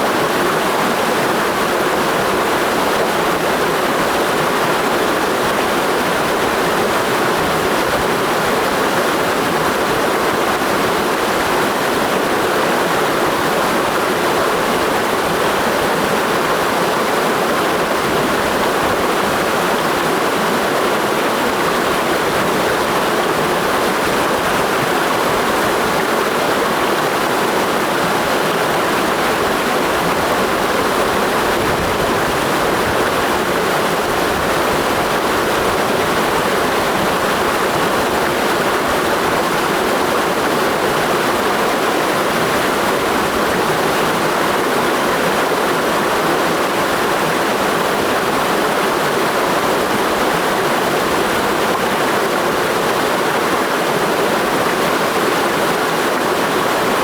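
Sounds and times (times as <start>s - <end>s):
stream rushing over rocks: 0.0s - 57.0s.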